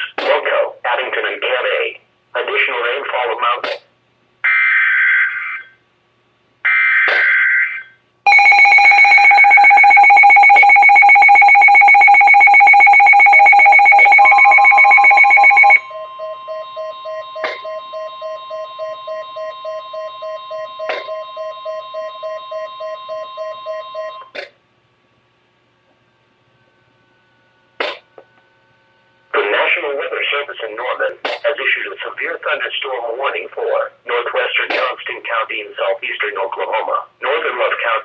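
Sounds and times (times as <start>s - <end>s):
pulsing alert tone: 8.3s - 24.2s
loud steady attention tone: 8.3s - 24.3s.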